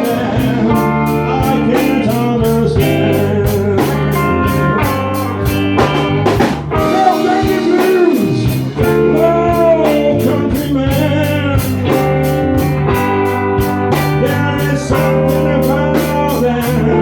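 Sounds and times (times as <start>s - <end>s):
person singing: 0.0s - 5.8s, 6.7s - 17.0s
bass guitar: 0.0s - 17.0s
blues band playing: 0.0s - 17.0s
electric guitar: 0.0s - 17.0s.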